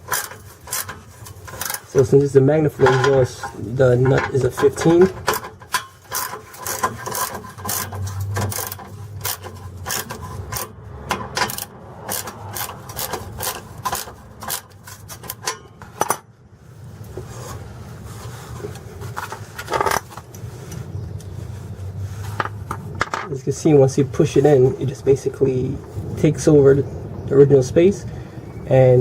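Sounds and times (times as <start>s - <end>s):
metal tool clicks and scraping: 0.0s - 16.2s, 18.7s - 21.3s
tool rubbing and knocks: 0.0s - 16.2s, 22.0s - 23.3s.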